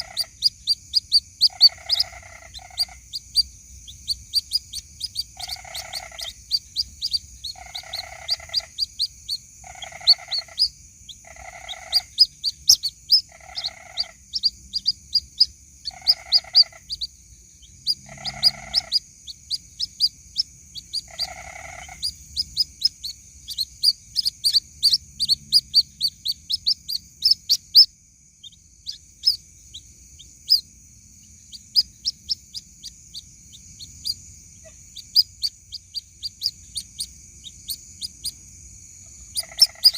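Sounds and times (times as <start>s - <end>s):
chicks peeping: 0.0s - 30.6s, 39.3s - 39.9s
lower drawn-out bird call: 4.1s - 20.1s.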